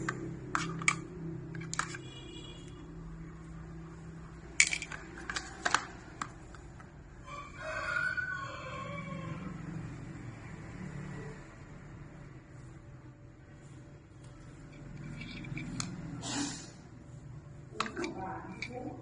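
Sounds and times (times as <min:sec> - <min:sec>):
rooster crowing: 0:07.2 - 0:09.9.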